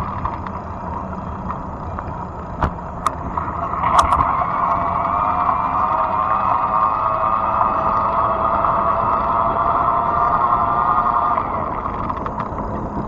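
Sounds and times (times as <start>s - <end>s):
electric bike humming: 0.0s - 13.0s
sharp clicks or rattles: 3.9s - 4.2s.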